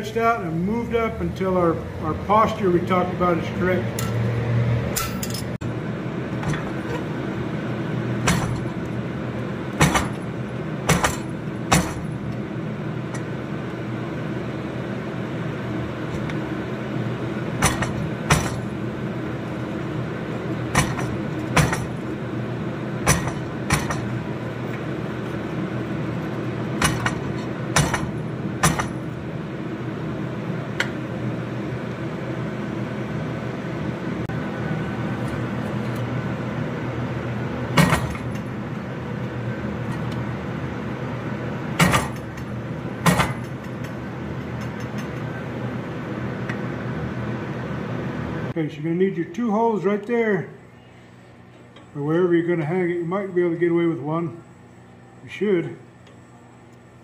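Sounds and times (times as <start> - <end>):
hammer striking hot steel on anvil: 4.9 - 5.6, 8.2 - 8.9, 9.7 - 12.4, 17.6 - 18.8, 20.7 - 22.2, 23.0 - 24.2, 26.8 - 29.1, 37.8 - 38.5, 41.8 - 45.4.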